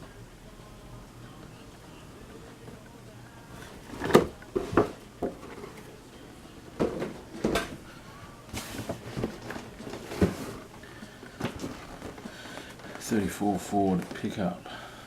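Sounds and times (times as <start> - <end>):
cardboard boxes being handled: 8.5 - 10.7
packaging rustle: 11.4 - 14.5.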